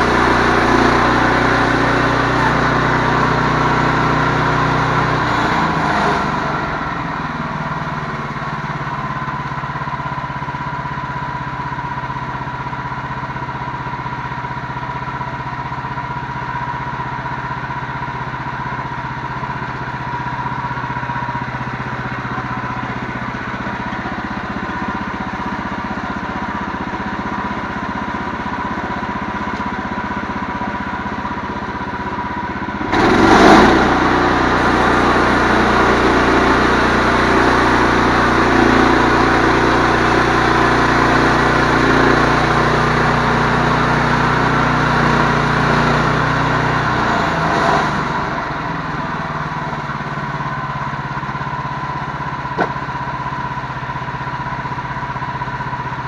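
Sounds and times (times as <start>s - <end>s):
engine running steadily: 0.0s - 56.0s
steady whine: 20.6s - 41.6s.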